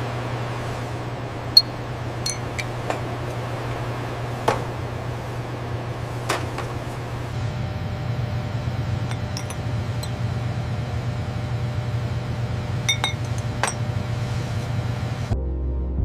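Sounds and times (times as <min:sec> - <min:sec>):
low machinery hum: 0:00.0 - 0:15.4
sharp ringing clinks: 0:02.3 - 0:02.7, 0:12.9 - 0:13.8.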